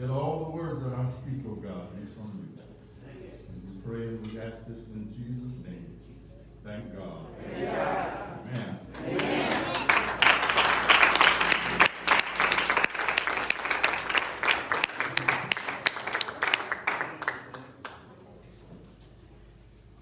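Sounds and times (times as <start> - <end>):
crowd applauding: 8.9 - 18.1.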